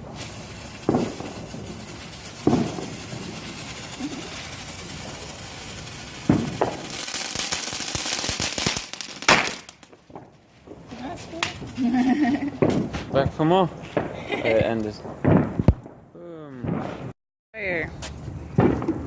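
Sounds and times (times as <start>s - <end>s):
crackling hiss: 0.0s - 10.1s
firework hissing: 0.0s - 10.1s, 11.0s - 13.2s
firework bangs: 0.0s - 17.1s, 18.5s - 19.0s.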